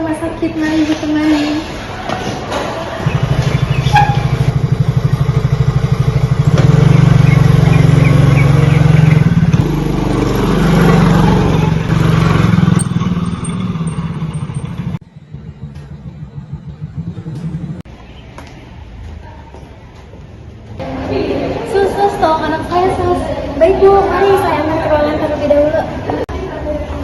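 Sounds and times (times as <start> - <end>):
motorcycle engine running: 3.0 - 17.9.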